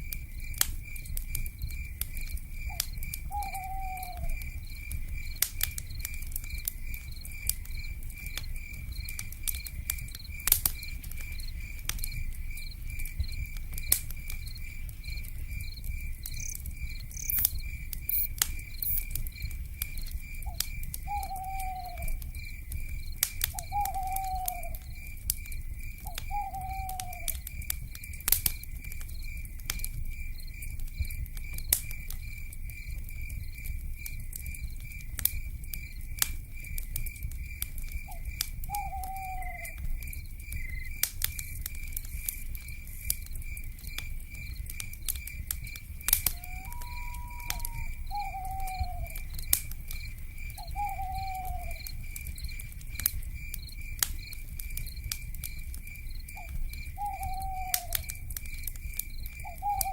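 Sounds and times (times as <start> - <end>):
campfire crackling and popping: 0.0 - 59.9
insect chirping: 0.0 - 59.9
owl calling: 2.7 - 4.4, 20.5 - 22.2, 23.6 - 24.8, 26.1 - 27.4, 38.1 - 39.7, 46.3 - 49.2, 50.6 - 51.8, 56.4 - 57.9, 59.4 - 59.9.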